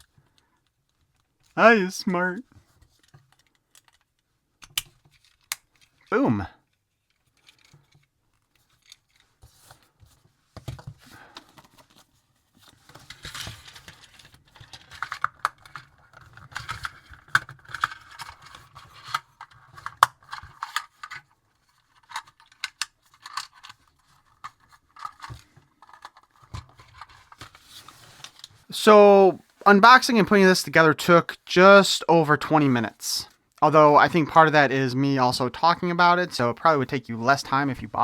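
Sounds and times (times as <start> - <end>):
plastic model pieces clicking: 3.4 - 5.9.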